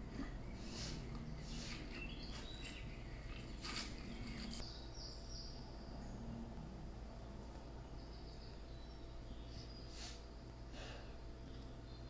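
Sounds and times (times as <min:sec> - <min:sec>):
woodland birds calling: 0:00.0 - 0:06.6
low background hum: 0:00.0 - 0:12.0.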